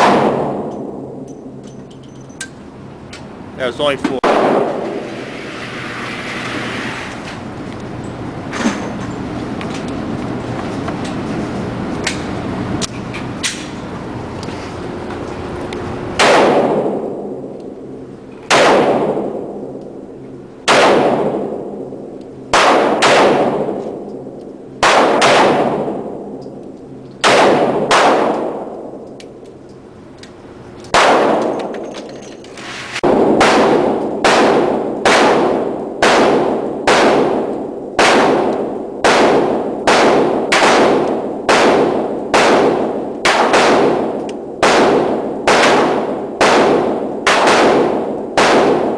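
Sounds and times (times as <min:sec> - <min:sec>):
echoing gunshots: 0:00.0 - 0:01.3, 0:03.8 - 0:05.5, 0:16.1 - 0:17.5, 0:18.5 - 0:19.8, 0:20.6 - 0:26.4, 0:27.2 - 0:29.0, 0:30.9 - 0:31.8, 0:33.0 - 0:48.9.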